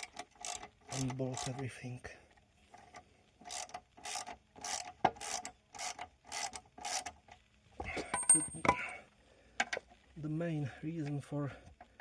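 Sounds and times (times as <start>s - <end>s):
ratchet wrench pawl rasping: 0.0s - 1.8s, 2.7s - 7.2s
sharp metallic clinks: 8.0s - 8.8s.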